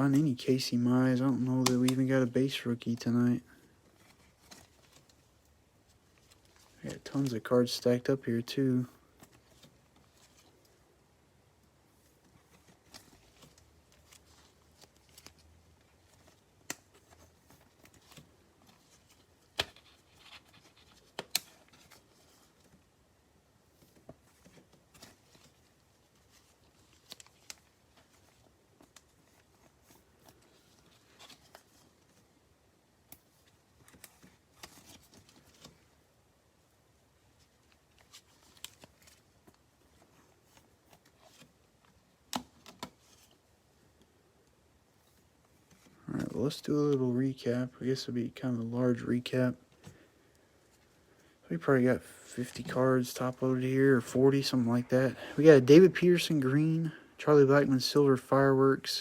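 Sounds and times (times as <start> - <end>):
cards rustling: 0.2 - 11.1, 11.9 - 36.2, 36.8 - 44.4.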